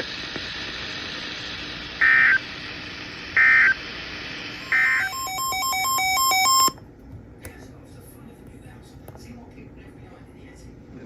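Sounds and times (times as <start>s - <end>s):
radio hiss: 0.0s - 5.9s
data bursts: 3.3s - 6.8s.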